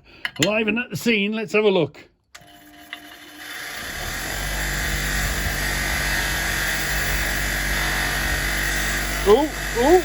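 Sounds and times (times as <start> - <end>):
motor-driven wire brush whirring: 2.4 - 10.0.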